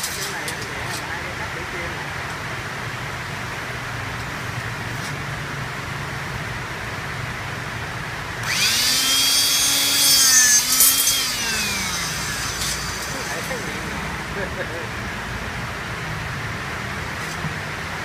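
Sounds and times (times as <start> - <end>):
rebar cutter motor whining: 8.4 - 14.4.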